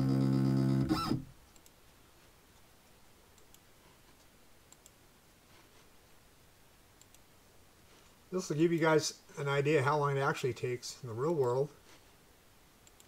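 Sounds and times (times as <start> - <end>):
computer mouse clicks: 1.5 - 1.8, 3.4 - 5.0, 7.0 - 7.3.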